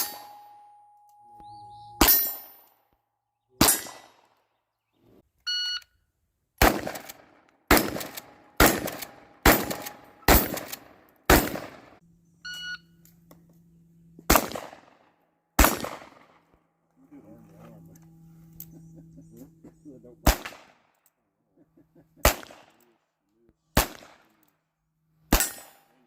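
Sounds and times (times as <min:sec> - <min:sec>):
short ringing tones: 0:00.0 - 0:02.9
gunshots: 0:06.6 - 0:12.0, 0:14.3 - 0:15.0, 0:15.6 - 0:16.4, 0:20.2 - 0:20.9, 0:22.2 - 0:22.8, 0:23.7 - 0:24.4, 0:25.3 - 0:25.9.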